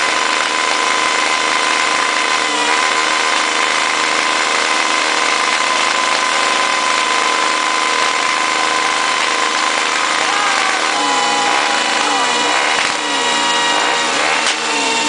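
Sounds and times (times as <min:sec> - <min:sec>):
motorcycle engine running steadily: 0:00.0 - 0:15.0.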